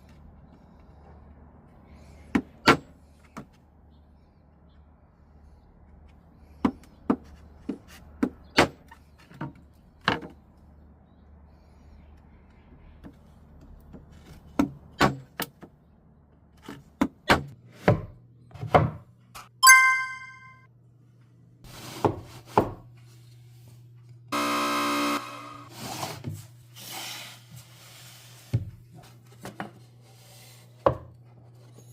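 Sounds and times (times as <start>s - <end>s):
short bright ringing tone: 19.6s - 20.6s.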